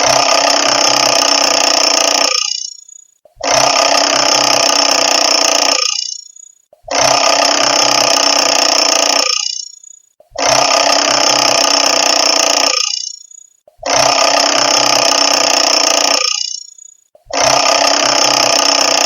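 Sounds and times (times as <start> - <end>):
alarm clock bell ringing: 1.8 - 3.2, 5.0 - 6.6, 9.1 - 10.1, 11.8 - 13.6, 15.6 - 17.0.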